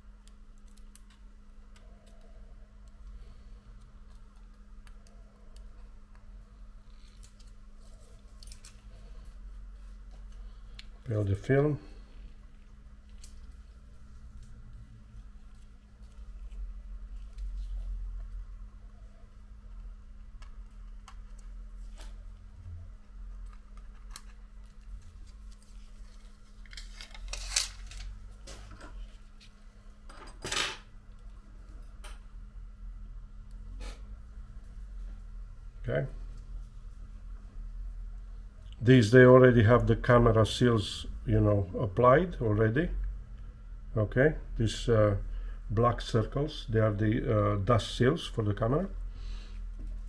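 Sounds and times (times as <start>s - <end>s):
steady low hum: 0.0s - 50.0s
faint clicks of phone parts: 0.2s - 11.0s.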